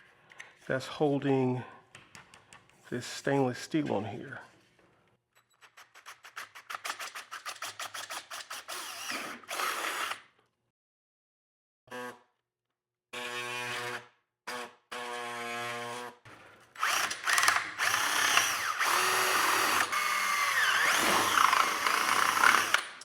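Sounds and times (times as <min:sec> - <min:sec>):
power drill drilling plastic: 0:06.7 - 0:10.2, 0:16.8 - 0:23.0.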